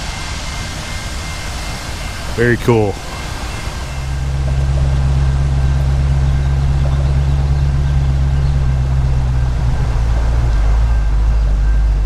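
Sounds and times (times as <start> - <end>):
large engine humming: 0.0 - 12.0.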